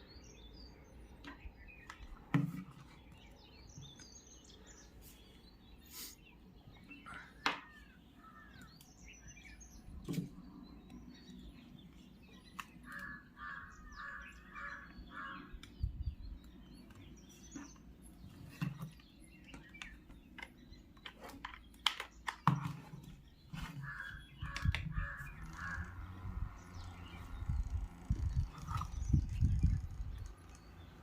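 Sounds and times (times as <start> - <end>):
crow calling: 7.1 - 8.7, 12.6 - 15.8, 23.7 - 27.1.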